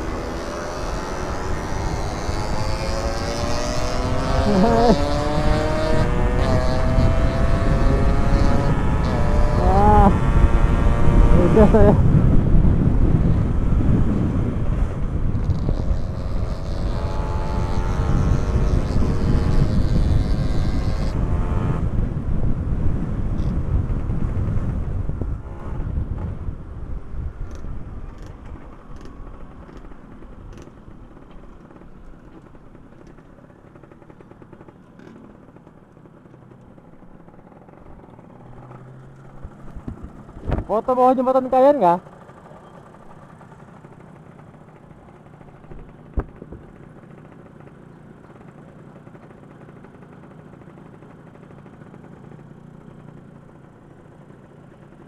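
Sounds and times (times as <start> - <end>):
wind rumbling over microphone: 0.0 - 30.6
motorcycle engine revving: 0.0 - 55.0.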